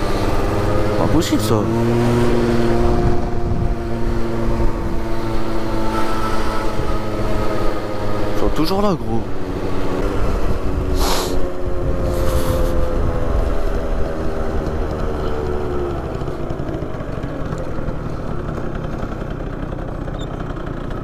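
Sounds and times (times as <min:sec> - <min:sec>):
heavy low rumble: 0:00.0 - 0:05.4, 0:10.0 - 0:19.0
scooter engine running: 0:00.0 - 0:21.0.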